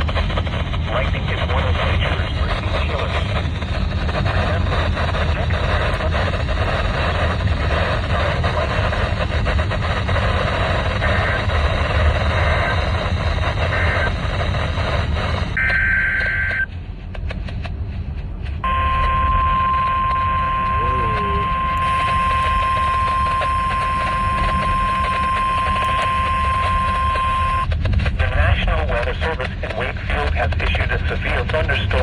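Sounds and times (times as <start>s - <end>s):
crackling clicks: 0.0s - 32.0s
radio static and hum: 0.0s - 32.0s
digital data bursts: 0.9s - 16.7s, 18.6s - 32.0s
steady warning alarm tone: 10.4s - 16.7s, 18.6s - 27.8s.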